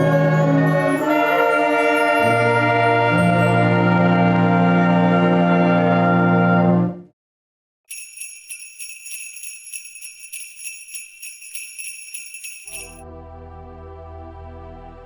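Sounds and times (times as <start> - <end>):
soft instrumental music: 0.0 - 6.4
sleigh bells shaken: 0.8 - 3.6, 7.9 - 13.0.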